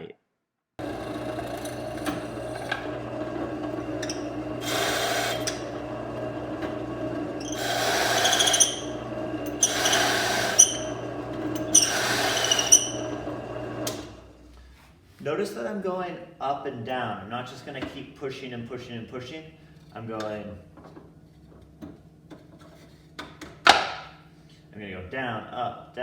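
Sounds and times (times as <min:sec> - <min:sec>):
drill bit cutting wood: 0:00.8 - 0:13.9
drill press motor running: 0:00.8 - 0:14.4.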